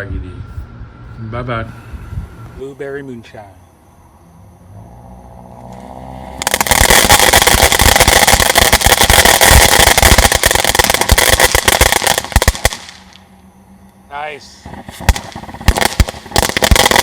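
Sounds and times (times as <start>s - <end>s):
firework fountain hissing and crackling: 6.3s - 13.4s, 14.1s - 17.0s.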